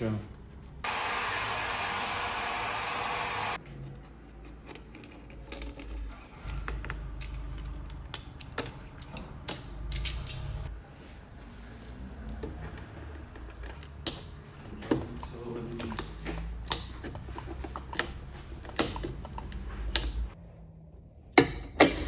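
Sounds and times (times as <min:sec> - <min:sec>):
ventilation fan rushing: 0:00.8 - 0:03.6
clicks and knocks of parts handled: 0:04.6 - 0:10.7, 0:12.3 - 0:20.4.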